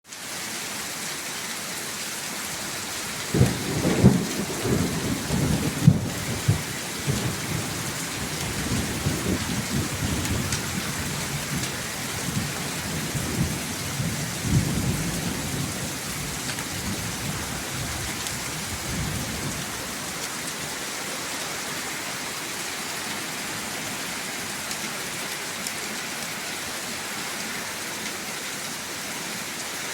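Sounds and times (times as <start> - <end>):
heavy rain falling: 0.1 - 29.9
thunder rolling: 3.3 - 20.0.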